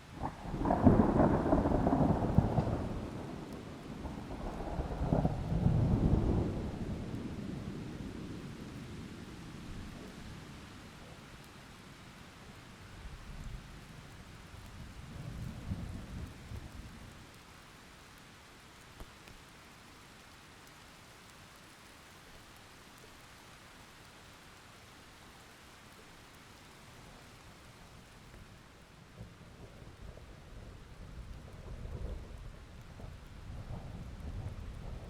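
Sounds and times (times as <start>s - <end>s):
steady rain: 0.0s - 35.0s
thunder rumbling: 0.2s - 8.0s, 29.2s - 35.0s.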